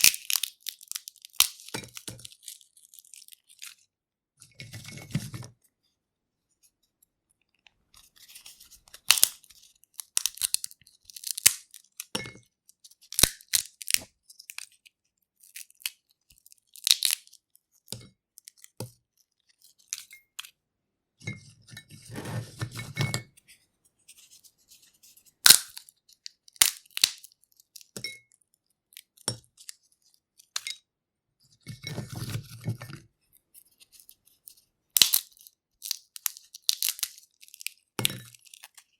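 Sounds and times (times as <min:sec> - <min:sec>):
peanut shells snapping: 0:00.0 - 0:03.7, 0:08.9 - 0:12.1, 0:13.0 - 0:14.8, 0:15.4 - 0:17.4, 0:25.4 - 0:28.0, 0:35.0 - 0:38.8
shells crunching and rustling: 0:00.0 - 0:03.9, 0:08.2 - 0:20.3, 0:25.4 - 0:30.6, 0:33.8 - 0:38.9.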